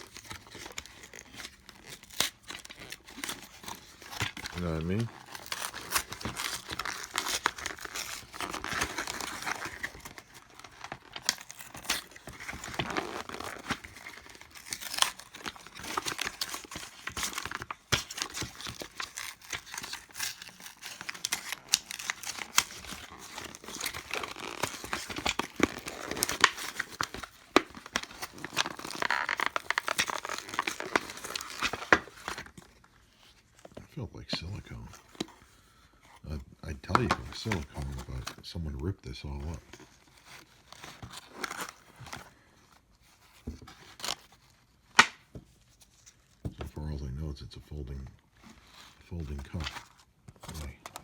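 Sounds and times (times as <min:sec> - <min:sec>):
packaging crinkling and tearing: 0:00.0 - 0:46.5, 0:48.3 - 0:51.0.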